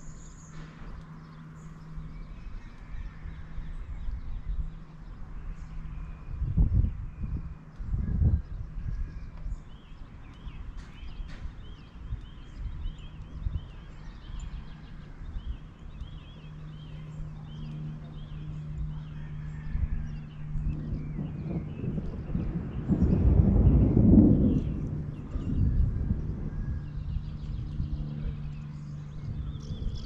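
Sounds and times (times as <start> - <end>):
low rumbling background: 0.0 - 30.0
small birds chirping rapidly: 0.0 - 30.0
steady low hum: 0.0 - 30.0.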